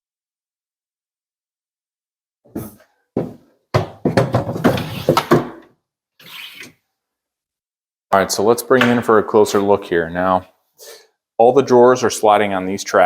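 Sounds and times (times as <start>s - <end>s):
drawers sliding on plastic tracks: 4.4s - 5.6s.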